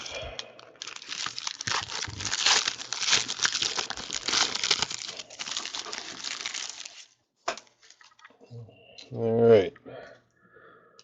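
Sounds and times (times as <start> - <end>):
card pack wrapper crinkling: 0.0 - 7.1.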